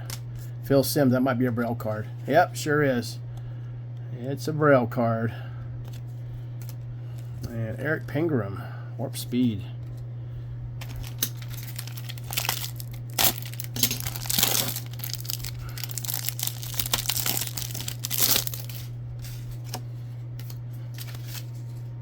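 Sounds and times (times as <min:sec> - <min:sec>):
card pack wrapper tearing and crinkling: 0:10.8 - 0:19.8, 0:20.4 - 0:21.7.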